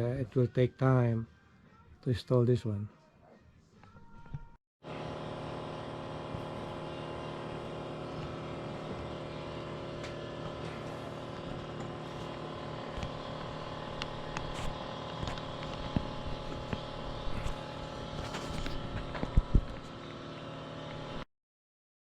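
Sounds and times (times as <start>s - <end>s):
steady motor hum: 3.9s - 21.3s.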